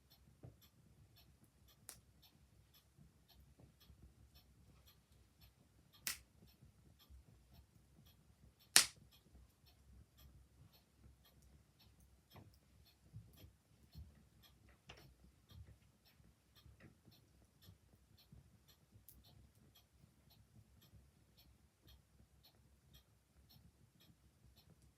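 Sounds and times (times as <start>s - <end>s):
clock ticking: 0.0s - 24.9s
wood fire crackling and popping: 6.0s - 6.2s, 8.8s - 9.0s.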